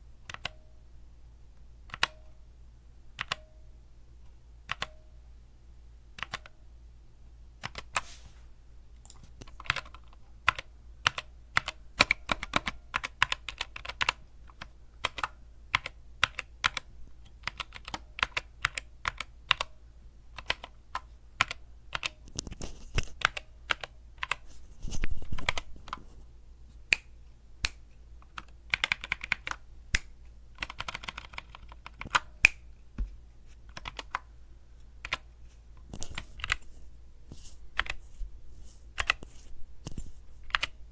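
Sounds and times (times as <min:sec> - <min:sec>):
mechanical keyboard typing: 0:00.3 - 0:00.6, 0:01.9 - 0:02.2, 0:03.2 - 0:03.5, 0:04.7 - 0:05.0, 0:06.2 - 0:06.5, 0:07.6 - 0:08.0, 0:09.4 - 0:19.7, 0:20.4 - 0:22.5, 0:23.1 - 0:24.4, 0:28.2 - 0:29.6, 0:30.6 - 0:32.4, 0:33.7 - 0:34.2, 0:35.0 - 0:35.3, 0:40.5 - 0:40.8.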